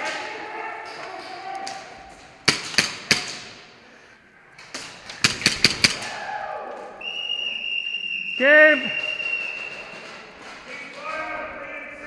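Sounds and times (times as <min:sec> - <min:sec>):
airsoft gun shots: 0:02.4 - 0:03.6, 0:05.2 - 0:06.0.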